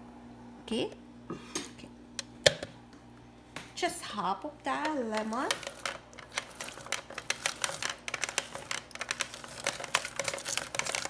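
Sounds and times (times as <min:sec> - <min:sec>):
lemon squeezing clicks and crackles: 0:05.1 - 0:11.0.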